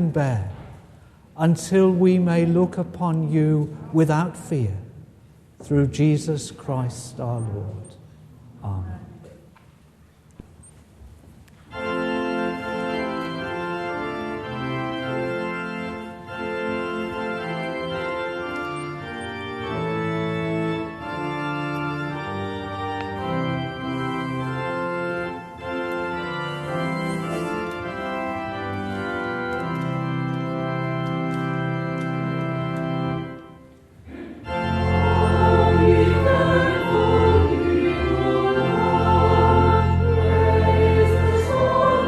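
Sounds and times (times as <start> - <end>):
church organ playing chords: 11.6 - 42.0.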